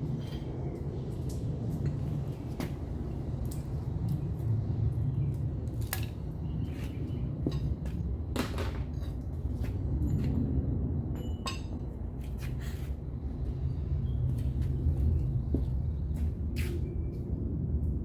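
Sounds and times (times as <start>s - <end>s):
steady low rumble: 9.3s - 18.0s.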